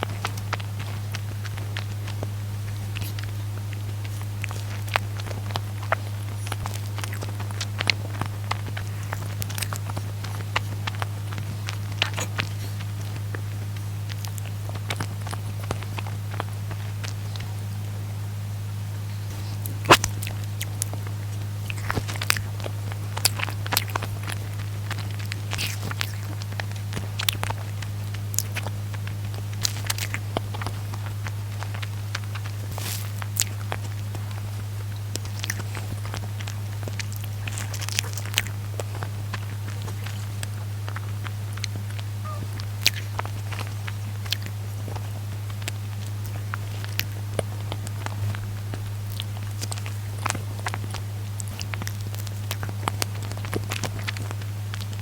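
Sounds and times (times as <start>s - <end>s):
person chewing bread: 0.0s - 55.0s
steady low hum: 0.0s - 55.0s
wet mouth clicks and smacks: 0.1s - 17.5s, 19.2s - 55.0s.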